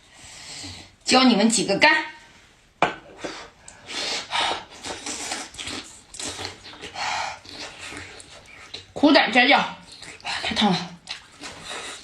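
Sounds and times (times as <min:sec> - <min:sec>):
slurping and chewing: 0:03.7 - 0:09.0, 0:09.7 - 0:12.0.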